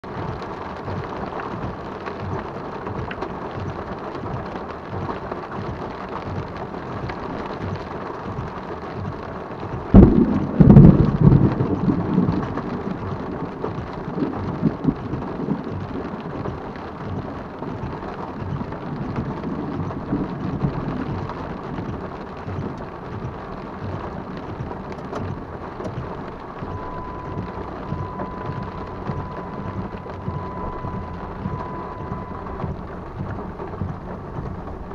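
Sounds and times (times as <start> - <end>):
heavy rain: 0.0 - 34.9
thunder crack and boom: 9.9 - 16.2
steady high tone: 26.7 - 32.7.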